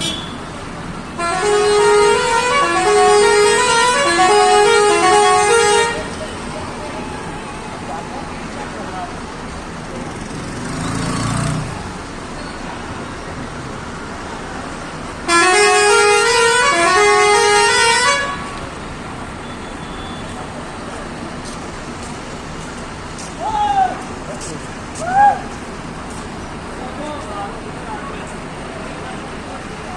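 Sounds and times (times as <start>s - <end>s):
bus musical horn tune: 0.0s - 0.5s, 1.1s - 6.4s, 15.2s - 18.6s
engine and road noise: 0.0s - 29.9s.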